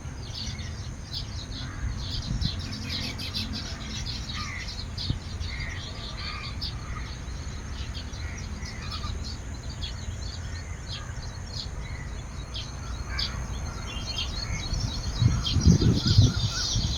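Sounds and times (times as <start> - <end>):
birds chattering and chirping: 0.0 - 16.9
steady low rumble: 11.5 - 16.9.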